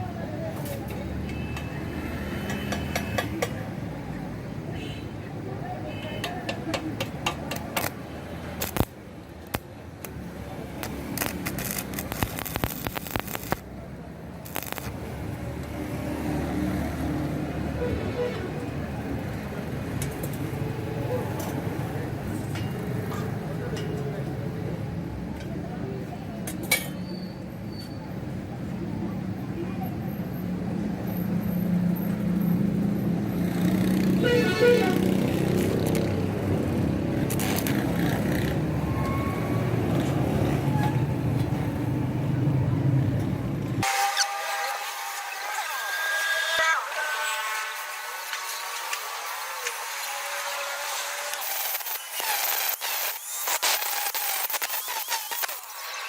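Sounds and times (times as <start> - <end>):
short horn toot: 34.2 - 35.1.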